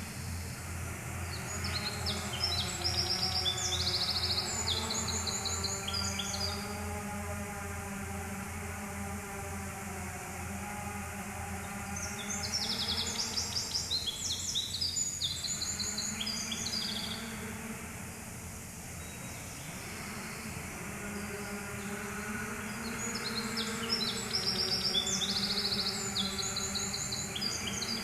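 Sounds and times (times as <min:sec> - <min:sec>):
small birds chirping: 0:00.0 - 0:06.9, 0:11.6 - 0:17.7, 0:18.9 - 0:28.0
steady low hum: 0:00.0 - 0:28.0.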